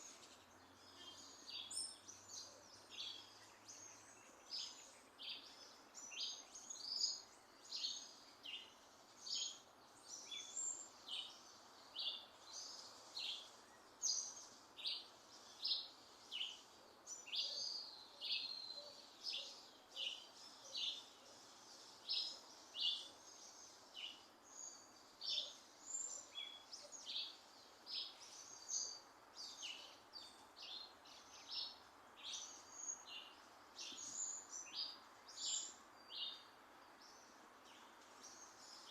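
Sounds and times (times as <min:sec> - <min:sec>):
faint steady hiss: 0:00.0 - 0:38.9
small birds chirping: 0:00.0 - 0:38.9.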